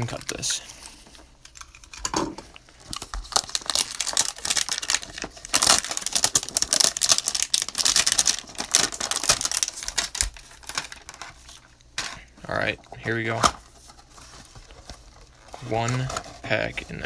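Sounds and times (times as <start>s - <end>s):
plastic wrap crinkling: 0.0s - 11.8s.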